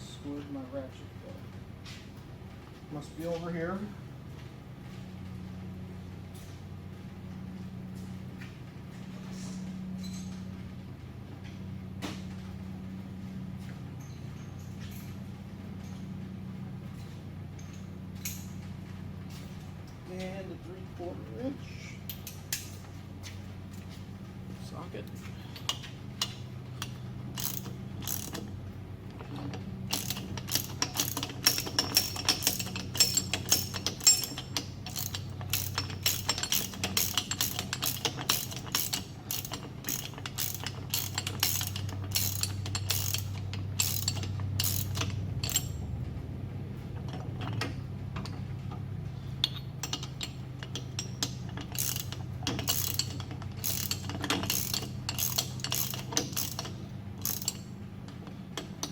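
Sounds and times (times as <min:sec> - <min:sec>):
steady low hum: 0:00.0 - 0:58.9
socket ratchet clicking: 0:27.4 - 0:28.4, 0:29.9 - 0:45.7, 0:49.8 - 0:57.7.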